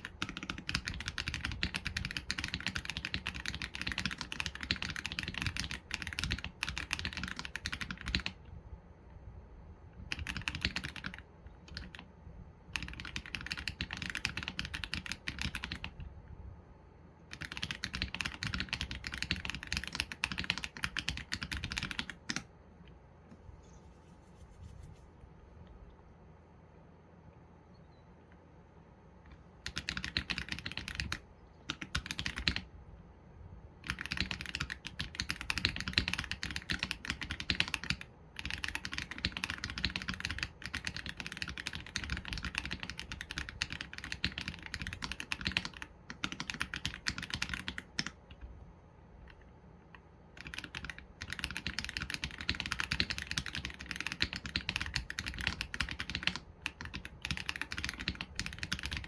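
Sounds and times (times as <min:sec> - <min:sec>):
mechanical keyboard typing: 0:00.0 - 0:08.4, 0:10.1 - 0:12.1, 0:12.7 - 0:16.1, 0:17.3 - 0:22.5, 0:29.6 - 0:32.7, 0:33.8 - 0:48.5, 0:49.2 - 0:59.0.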